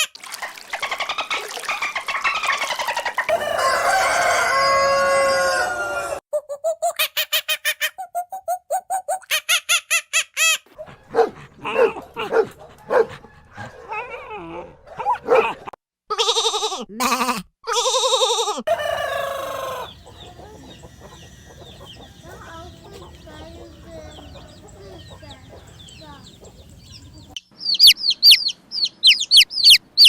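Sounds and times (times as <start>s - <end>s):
chickens clucking: 0.7s - 6.8s, 10.7s - 14.2s, 18.7s - 29.8s
rooster crowing: 3.3s - 6.2s, 18.7s - 27.4s
faint chirps: 18.7s - 29.8s.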